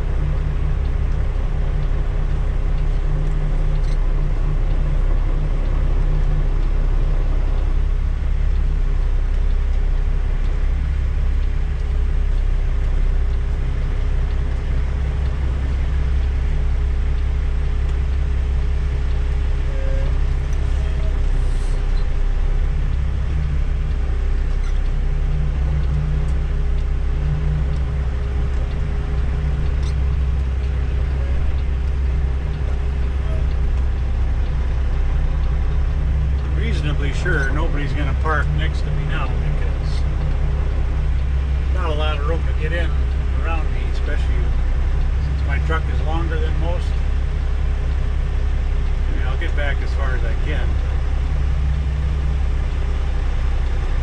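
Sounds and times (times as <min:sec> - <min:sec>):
diesel truck engine running: 0:00.0 - 0:54.0
faint steady tone: 0:00.0 - 0:54.0.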